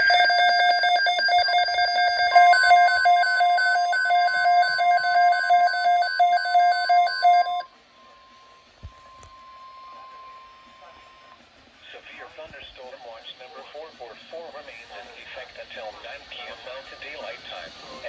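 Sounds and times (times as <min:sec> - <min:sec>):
steady alert tone: 0:00.0 - 0:07.6
rapid beeping alarm: 0:00.0 - 0:07.7.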